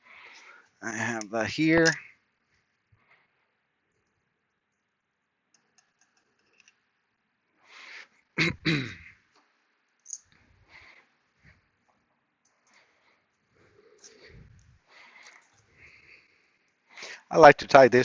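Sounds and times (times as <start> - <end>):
breathy hiss: 7.6 - 8.2, 12.7 - 17.4.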